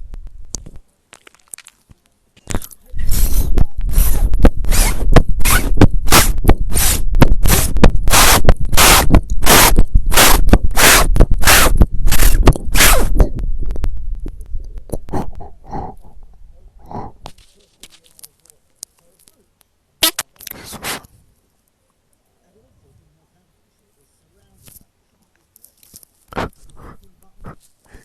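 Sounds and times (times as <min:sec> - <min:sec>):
loud distorted noise bursts: 0:03.0 - 0:14.3.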